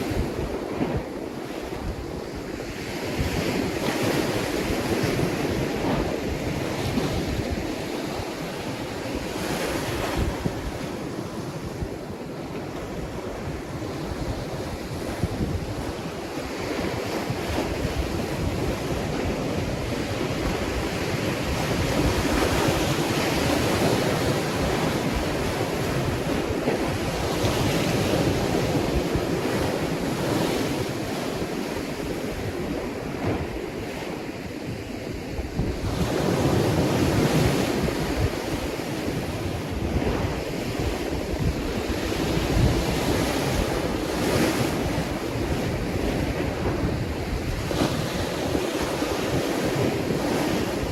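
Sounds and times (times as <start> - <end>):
ocean waves breaking on shore: 0.0 - 50.9
wind buffeting microphone: 0.0 - 50.9.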